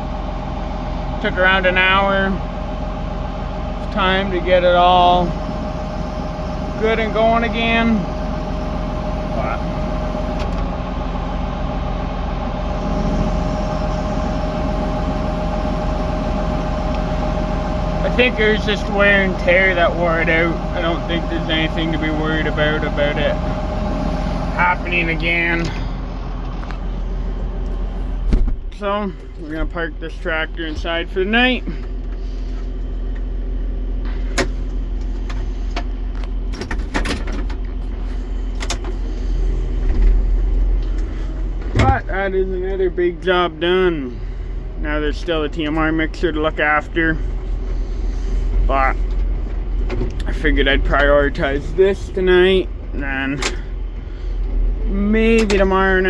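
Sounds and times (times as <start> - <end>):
tractor engine idling: 0.0 - 33.0, 37.7 - 56.0
constant whine: 0.0 - 56.0
sharp clanks and rattles: 34.1 - 39.0.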